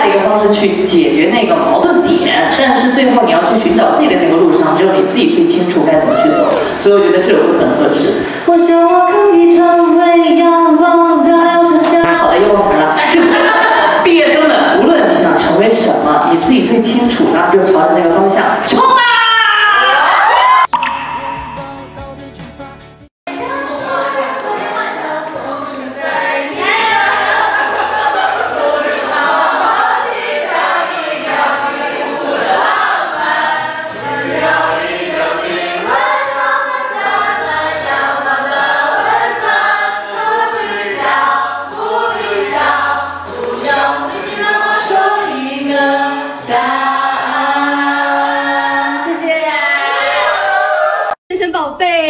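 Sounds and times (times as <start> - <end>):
group singing together: 10.7 - 16.5, 23.3 - 51.2
low musical accompaniment: 36.9 - 48.7.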